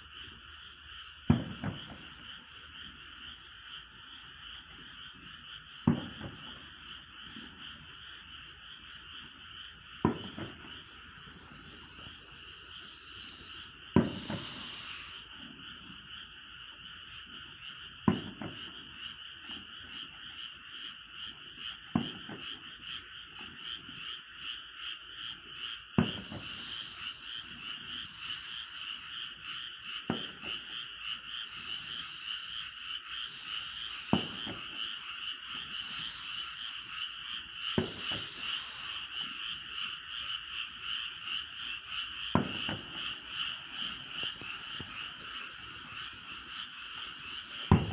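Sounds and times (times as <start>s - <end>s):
frogs chorus: 0.0s - 47.9s
distant fireworks booming: 1.1s - 8.2s, 8.8s - 20.2s, 21.3s - 24.1s, 25.2s - 40.0s, 41.5s - 47.9s.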